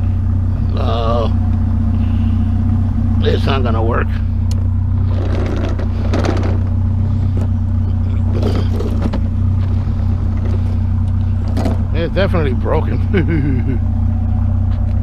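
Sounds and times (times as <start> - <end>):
vehicle engine idling: 0.0 - 15.0
knocks and scrapes: 5.0 - 11.9.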